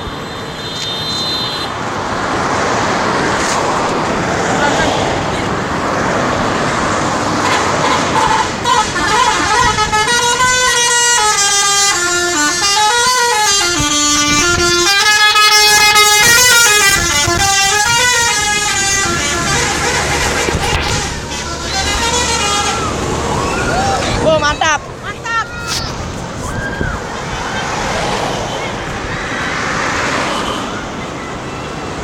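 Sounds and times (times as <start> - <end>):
bus horn playing melody: 0.0 - 1.8, 7.4 - 23.2.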